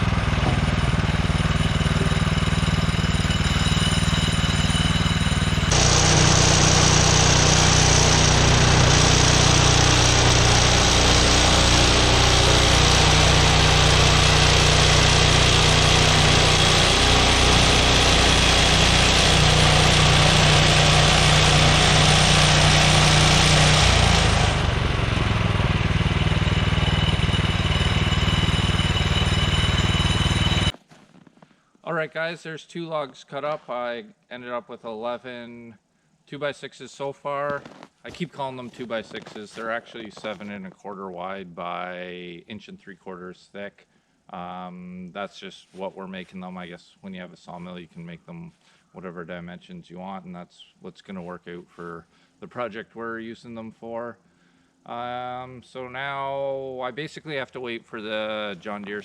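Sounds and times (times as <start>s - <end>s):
sawmill engine running: 0.0s - 30.8s
band blade cutting log: 5.7s - 24.5s.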